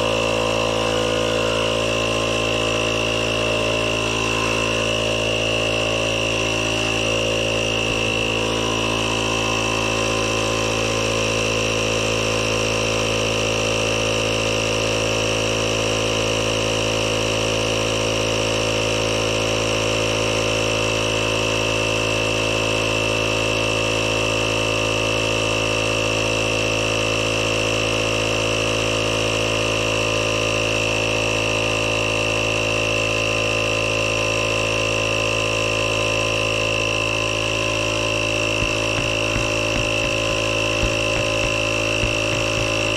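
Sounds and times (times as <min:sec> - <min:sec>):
air compressor humming: 0:00.0 - 0:12.5, 0:37.5 - 0:42.9.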